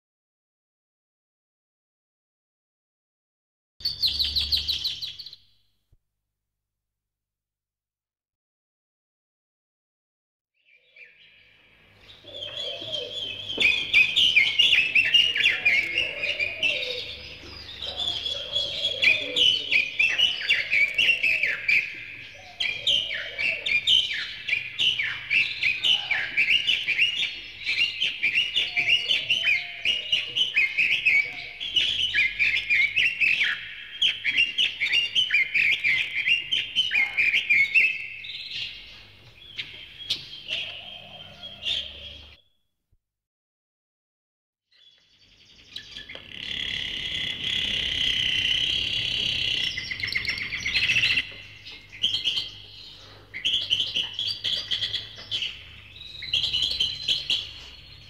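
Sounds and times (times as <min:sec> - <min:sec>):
songbirds chirping and twittering: 0:03.8 - 0:05.5, 0:10.6 - 0:42.5, 0:44.7 - 0:58.0.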